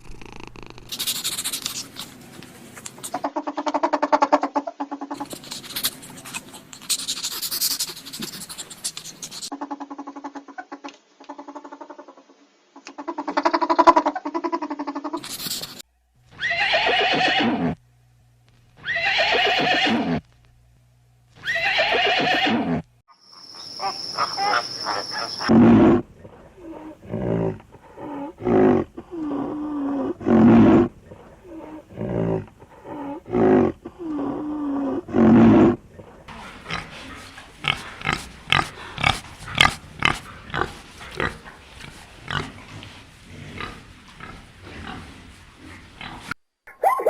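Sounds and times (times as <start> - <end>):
horse neighing: 16.4 - 17.8, 18.8 - 20.2, 21.4 - 22.8.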